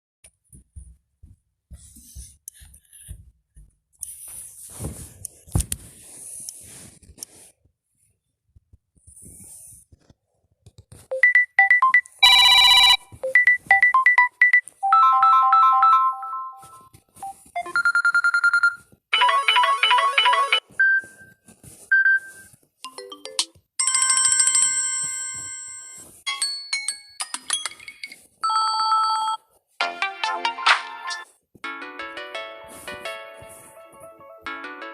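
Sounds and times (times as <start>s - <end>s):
phone ringtone melodies: 11.1s - 21.4s, 22.0s - 34.9s.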